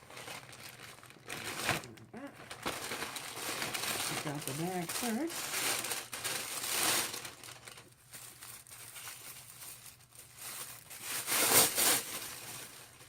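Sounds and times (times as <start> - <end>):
wrapping paper crinkling: 0.0 - 13.0.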